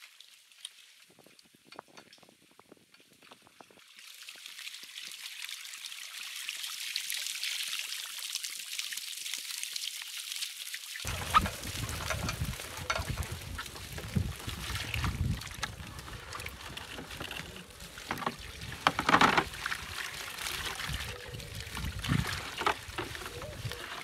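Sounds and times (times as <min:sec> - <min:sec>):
water splashing around a boat: 0:03.6 - 0:24.0
wind buffeting microphone: 0:11.1 - 0:17.8, 0:20.6 - 0:24.0.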